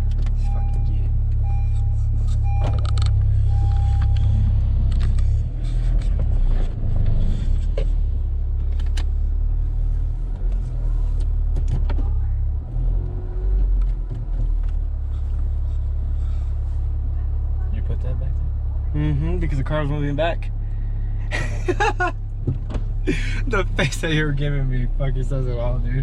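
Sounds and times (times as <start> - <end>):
car engine rumbling: 0.0 - 26.0.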